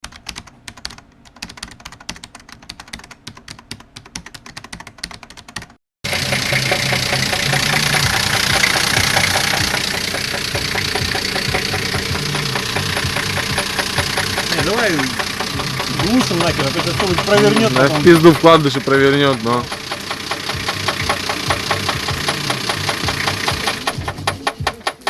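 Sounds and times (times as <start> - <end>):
keyboard typing clicks: 0.0 - 5.8
car engine idling: 6.0 - 25.0
wrench striking engine: 6.0 - 25.0.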